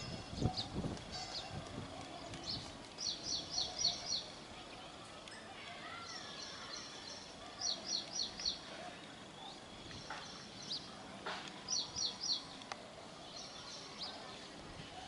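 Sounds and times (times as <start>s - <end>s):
outdoor background noise: 0.0s - 15.0s.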